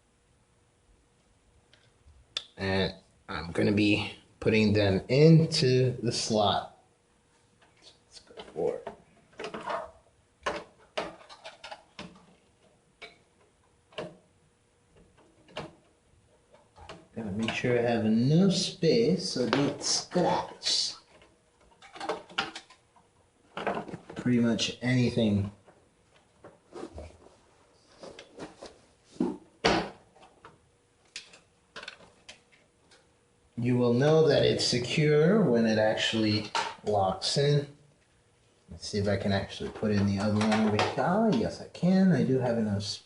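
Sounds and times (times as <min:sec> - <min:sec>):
light clicks and knocks of parts: 0:30.2 - 0:33.1.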